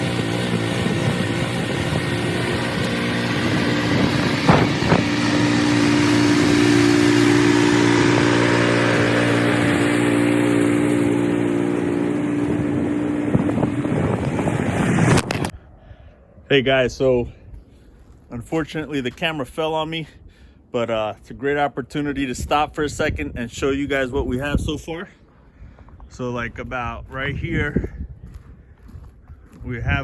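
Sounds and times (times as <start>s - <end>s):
snowblower engine running: 0.0s - 15.5s
sharp knocks: 4.4s - 5.1s.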